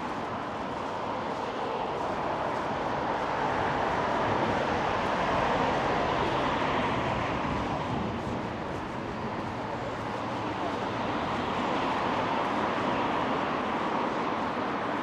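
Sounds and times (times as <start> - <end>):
road vehicle passing: 0.0 - 15.0.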